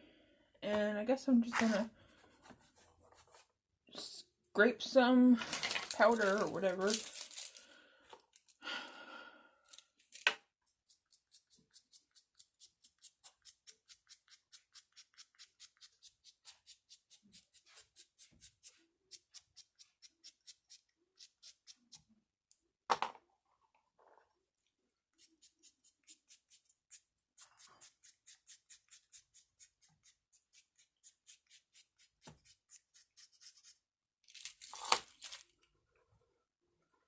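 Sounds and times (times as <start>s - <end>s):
tool scraping powder: 10.9s - 21.9s.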